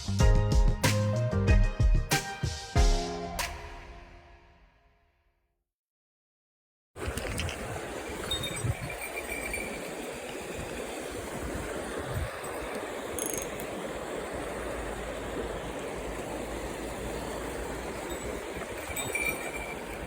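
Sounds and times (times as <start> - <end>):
stream running over rocks: 7.0 - 20.0.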